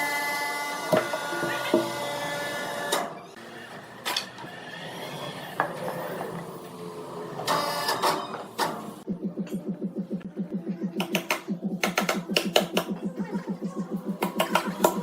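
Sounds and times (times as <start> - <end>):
rapid regular pulsing: 9.0 - 15.0.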